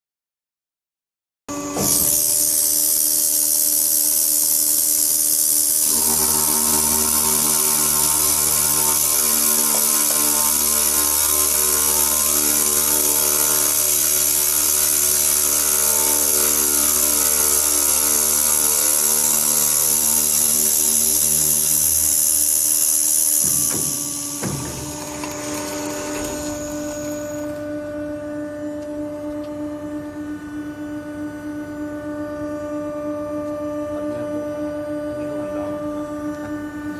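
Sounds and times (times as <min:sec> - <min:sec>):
saw motor whine: 0:01.5 - 0:36.9
saw cutting steel hiss: 0:01.8 - 0:27.6
machine clunks: 0:23.4 - 0:27.2.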